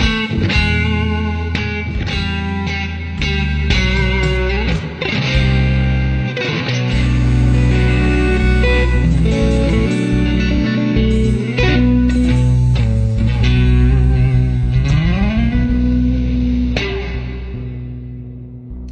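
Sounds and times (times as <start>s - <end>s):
electric guitar sustained notes: 0.0s - 18.9s.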